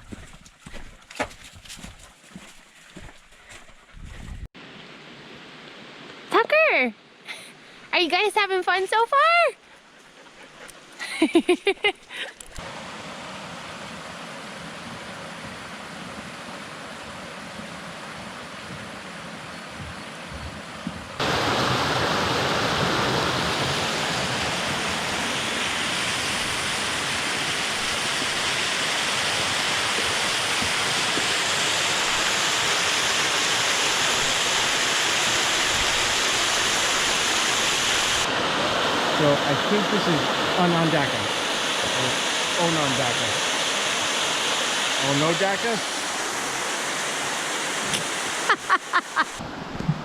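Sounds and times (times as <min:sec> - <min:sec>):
waterfall rushing: 0:21.2 - 0:49.5.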